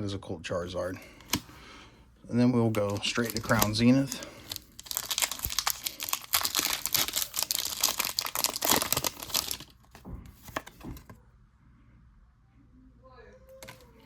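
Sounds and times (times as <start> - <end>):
foil wrapper crinkling and tearing: 2.7 - 10.7.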